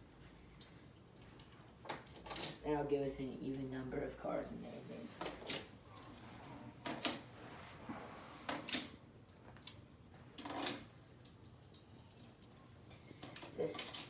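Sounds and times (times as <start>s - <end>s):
toy cars clacking: 10.4s - 14.0s.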